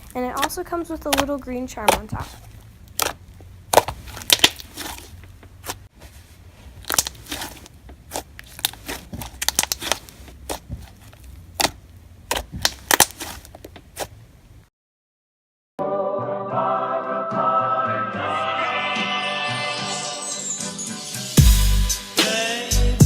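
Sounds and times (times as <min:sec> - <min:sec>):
slime clicking and crackling: 0:00.0 - 0:05.9, 0:06.7 - 0:14.1.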